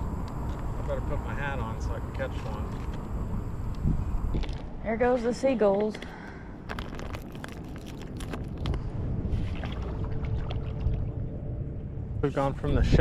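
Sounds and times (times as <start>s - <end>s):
wind rumbling on microphone: 0.0s - 5.0s, 6.6s - 13.0s
water splashing and dripping: 6.9s - 11.2s.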